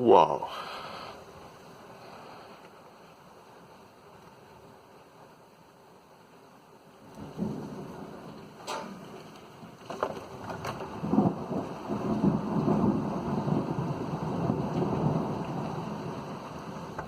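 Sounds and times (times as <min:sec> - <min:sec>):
steady rain: 0:00.0 - 0:17.0
thunder rumbling: 0:07.0 - 0:17.0.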